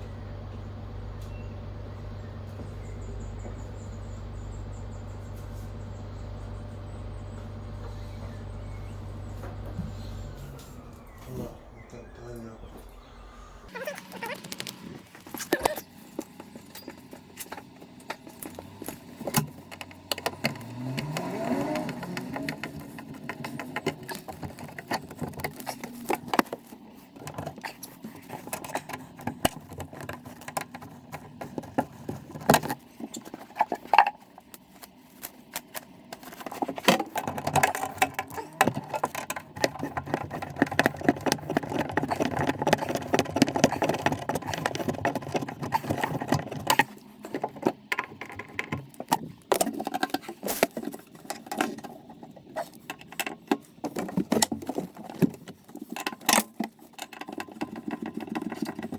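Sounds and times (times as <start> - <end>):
metal tools clinking and rattling: 13.8 - 20.6.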